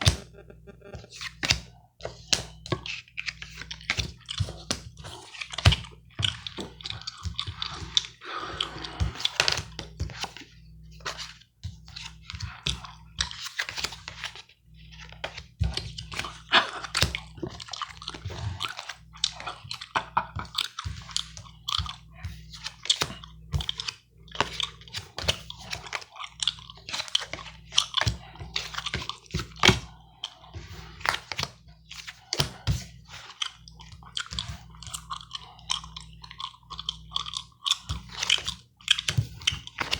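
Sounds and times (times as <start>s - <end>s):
low electrical hum: 0.0s - 39.9s
gum chewing: 3.4s - 9.8s, 16.0s - 39.9s.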